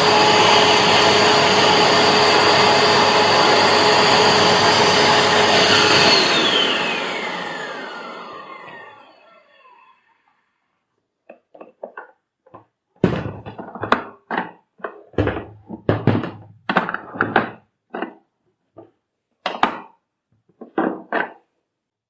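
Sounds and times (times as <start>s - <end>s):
plastic parts knocking and clicking: 11.2s - 21.5s
heavy thuds: 13.0s - 13.9s.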